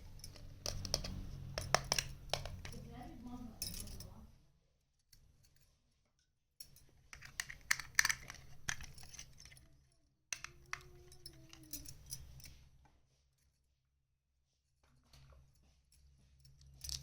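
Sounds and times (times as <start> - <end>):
plastic toy pieces clicking: 0.6 - 2.8, 7.2 - 9.6, 10.4 - 11.8.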